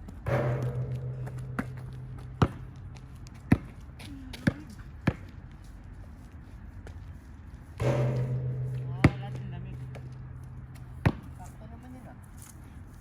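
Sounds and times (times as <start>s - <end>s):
low ringing hum: 0.0s - 5.9s, 7.8s - 13.0s
sharp knocks: 0.3s - 3.8s, 7.8s - 11.5s.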